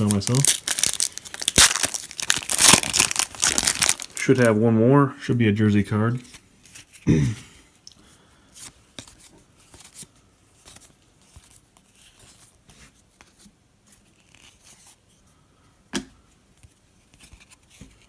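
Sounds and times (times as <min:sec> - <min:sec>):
cards rustling and clicking: 0:08.6 - 0:15.0, 0:16.6 - 0:18.0.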